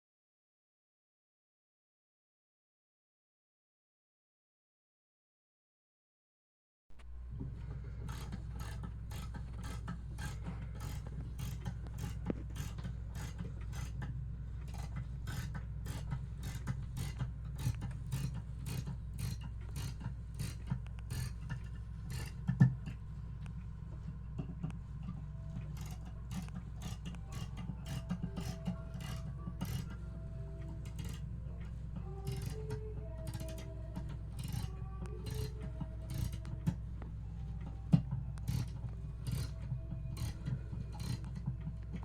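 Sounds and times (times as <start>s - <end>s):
steady low hum: 6.9s - 42.0s
mechanical ticking clicks: 8.0s - 23.7s, 24.5s - 42.0s.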